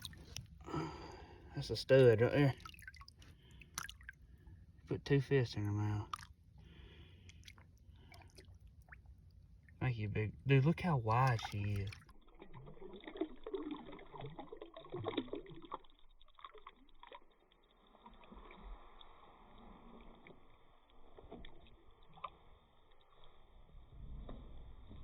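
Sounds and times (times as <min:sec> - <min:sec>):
small splashes and knocks: 0:00.0 - 0:00.9, 0:02.0 - 0:04.3, 0:06.0 - 0:09.8, 0:11.1 - 0:18.6, 0:19.8 - 0:23.2
water lapping: 0:00.0 - 0:04.9, 0:05.6 - 0:23.6.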